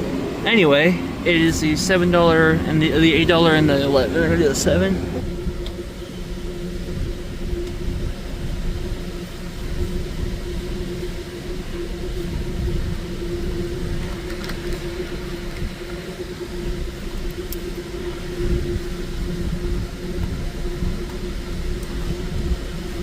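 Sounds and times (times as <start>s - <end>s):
car engine idling: 0.0s - 9.7s.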